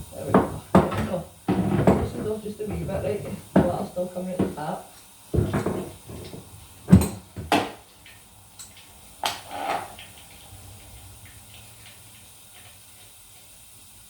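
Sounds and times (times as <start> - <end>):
water trickling from tap: 0.0 - 13.9
sharp knocks and clunks: 0.3 - 3.8, 5.3 - 7.8.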